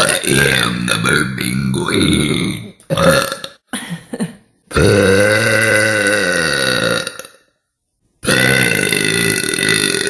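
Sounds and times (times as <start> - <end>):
woman burping: 2.4 - 4.0, 4.7 - 7.4, 8.2 - 10.0.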